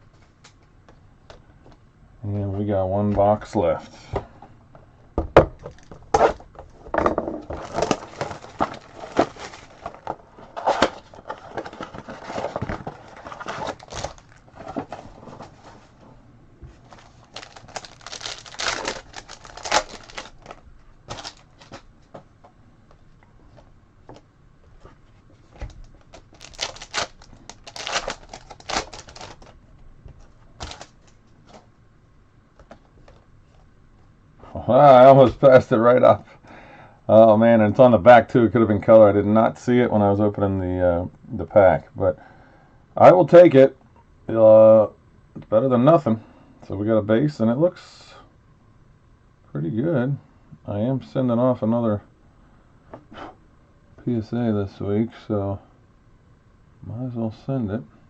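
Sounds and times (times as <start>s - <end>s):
foil packs crinkling and tearing: 7.6s - 14.8s, 16.9s - 21.8s, 25.6s - 29.6s, 30.6s - 31.2s.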